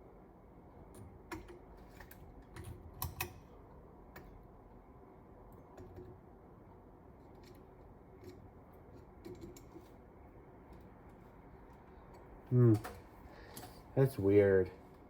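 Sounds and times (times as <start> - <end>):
small parts clicking and tapping: 0.9 - 3.5, 7.2 - 10.0.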